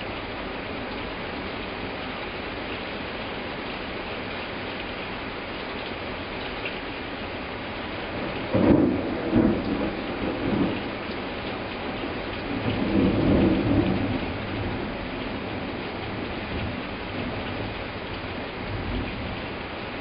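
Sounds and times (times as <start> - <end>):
heavy rain hissing: 0.0 - 20.0
thunder rumbling: 8.1 - 11.4, 12.0 - 17.8.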